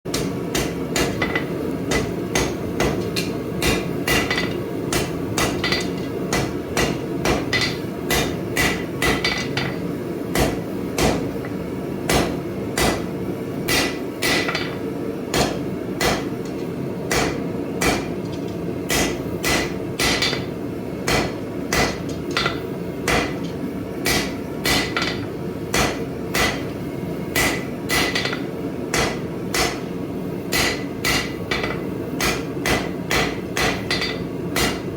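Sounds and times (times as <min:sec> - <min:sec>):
hammer striking steel bar: 0:00.1 - 0:09.8, 0:12.1 - 0:13.0, 0:13.7 - 0:16.3, 0:17.1 - 0:18.1, 0:18.9 - 0:20.5, 0:21.1 - 0:23.5, 0:24.1 - 0:26.7, 0:27.4 - 0:29.8, 0:30.5 - 0:34.9.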